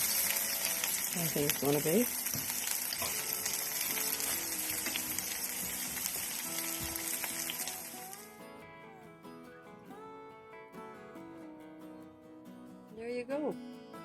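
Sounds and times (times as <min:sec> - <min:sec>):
meat sizzling in a frying pan: 0:00.0 - 0:08.2
acoustic guitar music: 0:00.0 - 0:14.0.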